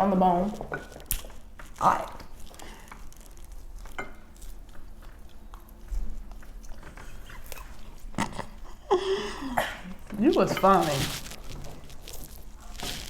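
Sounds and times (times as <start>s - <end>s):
people chewing meat: 0.7s - 13.0s.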